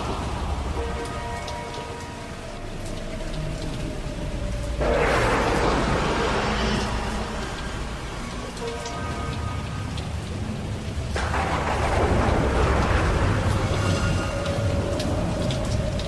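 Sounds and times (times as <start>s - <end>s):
steady rain: 0.0s - 16.0s
thunder rolling: 4.7s - 16.0s.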